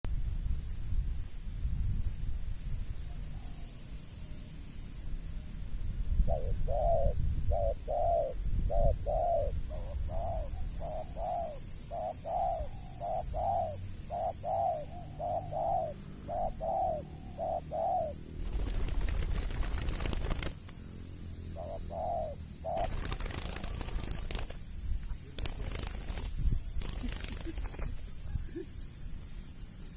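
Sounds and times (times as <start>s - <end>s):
steady high-pitched whine: 0.1s - 29.9s
dove cooing: 6.3s - 20.4s, 21.6s - 24.2s.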